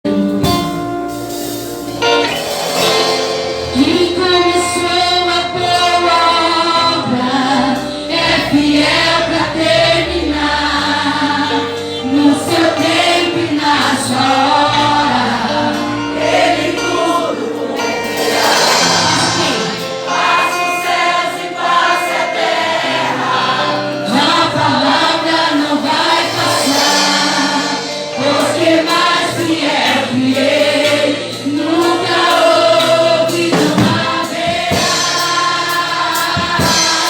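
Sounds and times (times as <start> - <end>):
sustained chords and bass line: 0.1 - 21.8
choir-like singing: 2.2 - 37.0.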